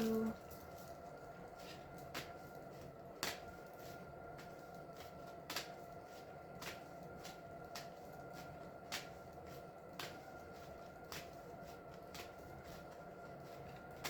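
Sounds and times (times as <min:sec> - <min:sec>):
faint steady hum: 0:00.0 - 0:01.9.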